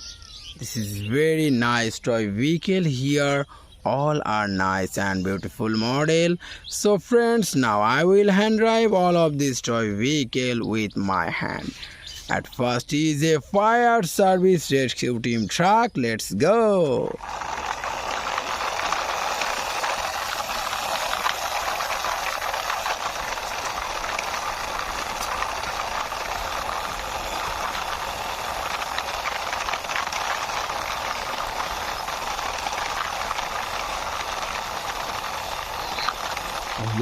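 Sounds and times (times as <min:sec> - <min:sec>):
toy truck wheels rolling on wall: 0:17.1 - 0:37.0
small clicks and rattles: 0:17.2 - 0:37.0.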